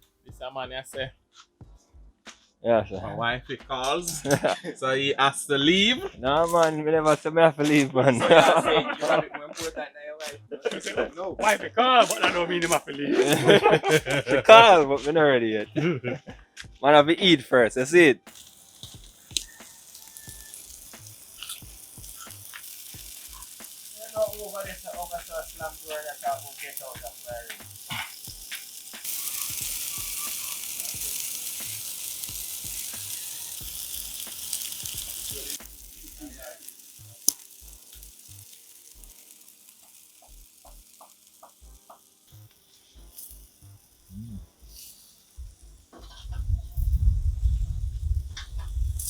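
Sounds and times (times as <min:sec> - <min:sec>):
meat sizzling on a grill: 0:03.0 - 0:15.1, 0:17.7 - 0:49.0
small clicks: 0:18.3 - 0:44.0.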